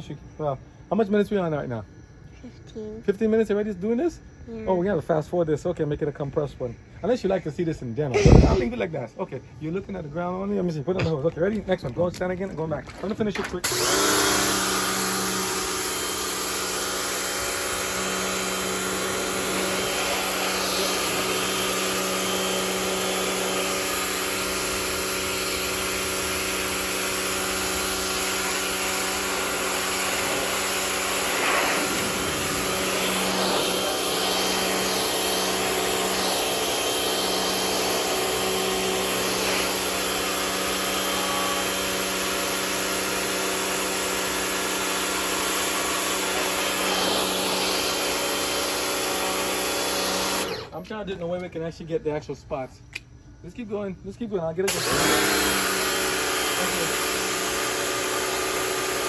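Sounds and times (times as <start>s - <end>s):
electric pump humming: 8.2s - 8.8s, 13.0s - 50.7s, 54.7s - 59.0s
water jet spraying on concrete: 14.0s - 41.7s, 54.7s - 59.0s.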